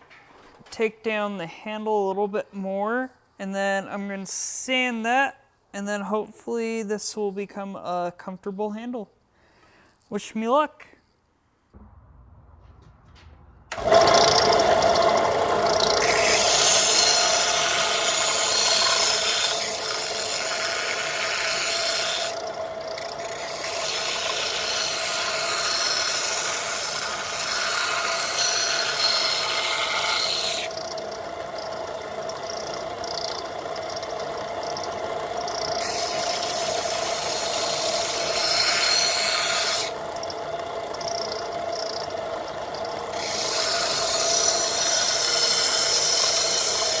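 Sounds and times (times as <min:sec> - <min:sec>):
power tool grinding steel: 0:13.7 - 0:47.0.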